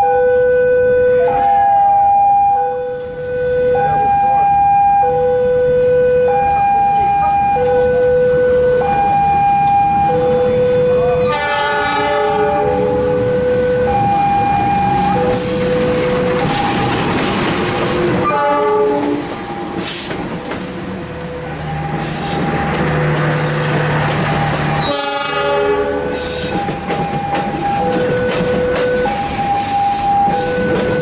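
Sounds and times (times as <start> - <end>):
train rumble: 2.9 - 31.0
train horn blasts: 10.4 - 13.0, 18.2 - 19.2, 24.8 - 26.6.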